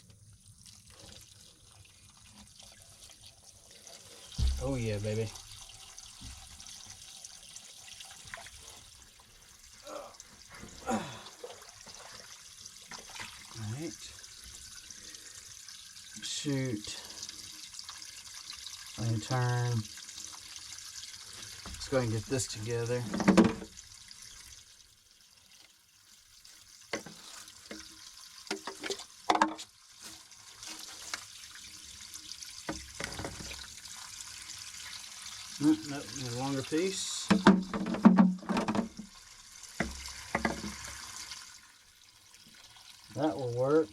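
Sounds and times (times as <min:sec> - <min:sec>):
water flowing and splashing: 0:00.0 - 0:43.9
pipe fittings knocking: 0:04.3 - 0:05.1, 0:23.0 - 0:23.8, 0:37.2 - 0:39.1, 0:39.8 - 0:41.0.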